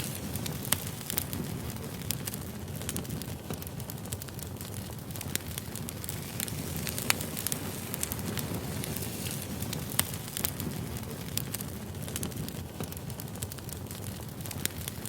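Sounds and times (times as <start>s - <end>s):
fire rumbling: 0.0s - 15.0s
firewood crackling and popping: 0.0s - 15.0s.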